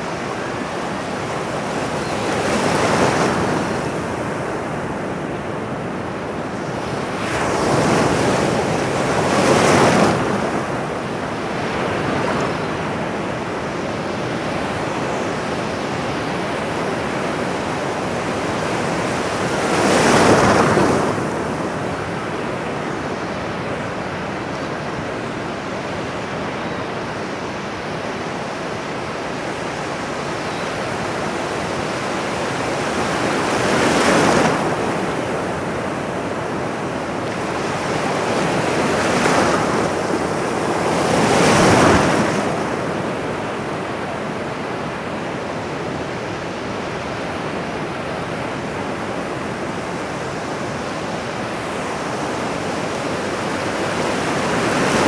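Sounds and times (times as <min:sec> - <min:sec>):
ocean surf washing: 0:27.4 - 0:55.0.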